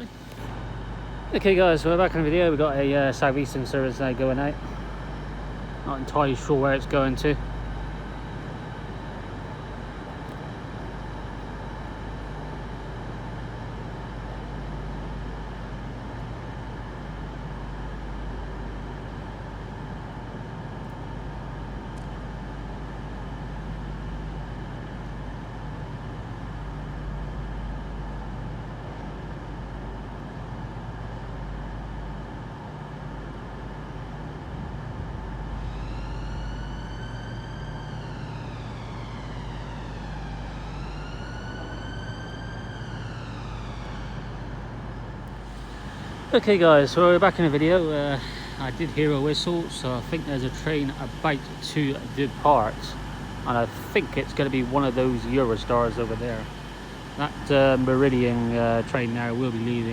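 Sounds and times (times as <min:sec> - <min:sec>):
electric train rumble: 0:00.0 - 0:59.9
rising whine: 0:33.2 - 0:59.9.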